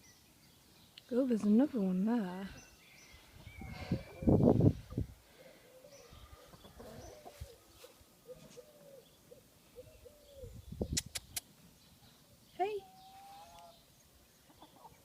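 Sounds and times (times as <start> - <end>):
chickens clucking: 3.4 - 5.1, 5.7 - 10.2, 12.8 - 15.0
sharp clicks: 10.9 - 11.5.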